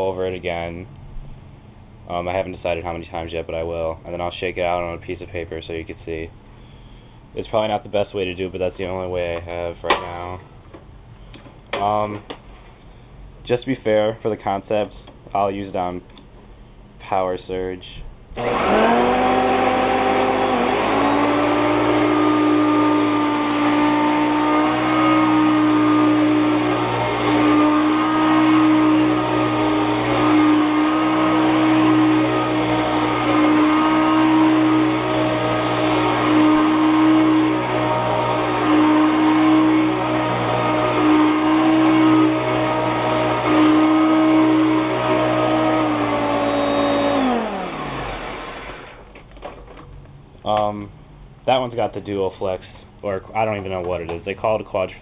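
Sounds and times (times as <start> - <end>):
vacuum cleaner motor running: 18.4 - 49.1.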